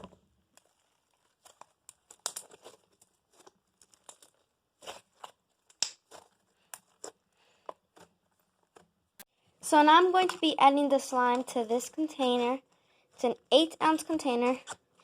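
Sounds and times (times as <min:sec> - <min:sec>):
slime crackling and clicking: 0:00.0 - 0:07.2.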